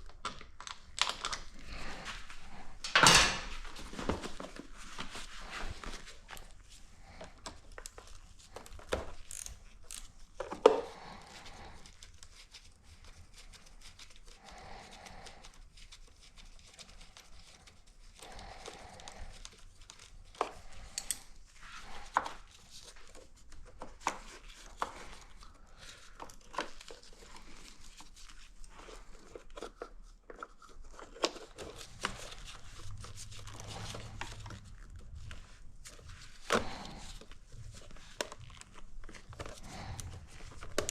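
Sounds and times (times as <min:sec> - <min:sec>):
rustling: 0:00.6 - 0:40.9.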